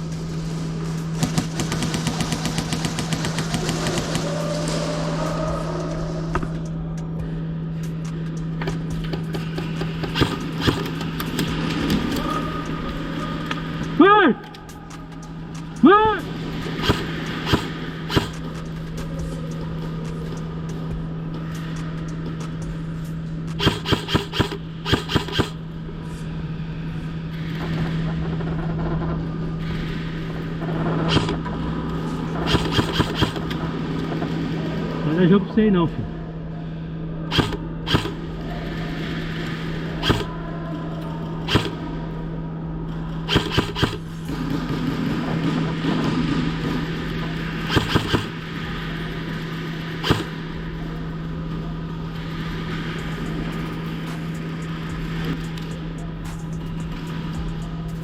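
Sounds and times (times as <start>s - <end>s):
low hum: 0.0s - 58.0s
airsoft gun shots: 1.2s - 4.4s, 9.7s - 11.2s, 16.8s - 18.4s, 23.6s - 25.6s, 31.1s - 31.4s, 32.5s - 33.5s, 37.3s - 38.2s, 40.0s - 40.4s, 41.5s - 41.8s, 43.3s - 44.1s, 47.6s - 48.4s, 50.0s - 50.4s.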